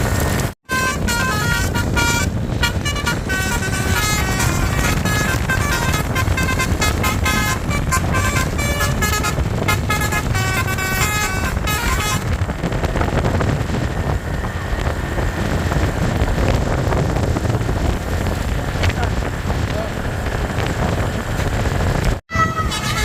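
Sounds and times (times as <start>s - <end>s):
engine and road rumble: 0.0s - 23.0s
bus multi-tone horn tune: 0.6s - 16.4s, 22.3s - 23.0s.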